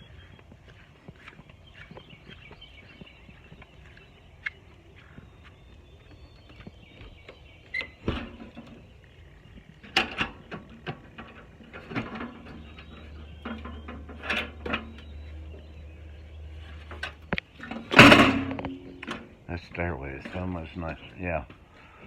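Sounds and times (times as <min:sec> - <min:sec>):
low steady hum: 0:09.4 - 0:20.7
knocks and clunks: 0:16.9 - 0:19.3.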